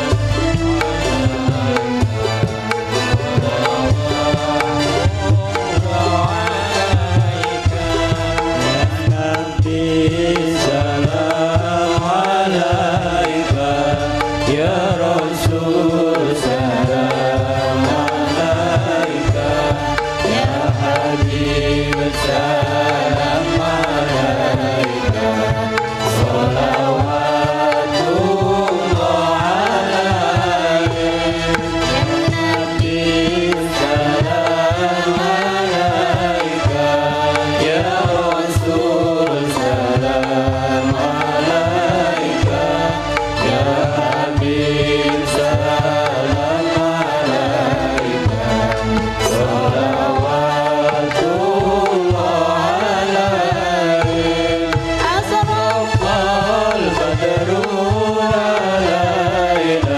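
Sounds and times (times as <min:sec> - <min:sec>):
hand drum playing: 0:00.0 - 0:59.9
person singing devotional song: 0:00.0 - 0:59.9.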